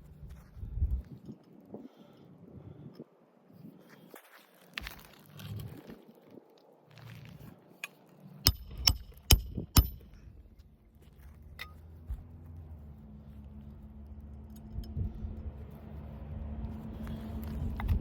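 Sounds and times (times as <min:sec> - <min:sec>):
steady low hum: 0:07.2 - 0:18.0
sharp metallic clicks: 0:07.8 - 0:10.2.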